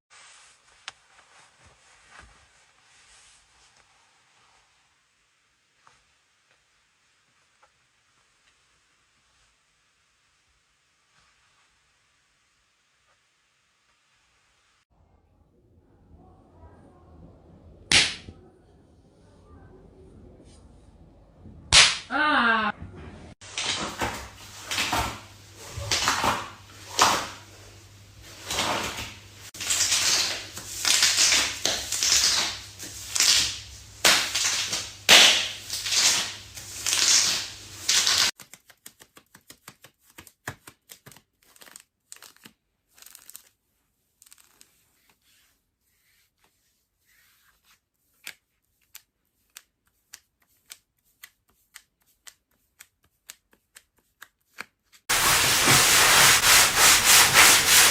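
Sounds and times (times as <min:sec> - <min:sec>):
leather being rubbed: 0:44.3 - 0:47.8, 0:55.1 - 0:57.9.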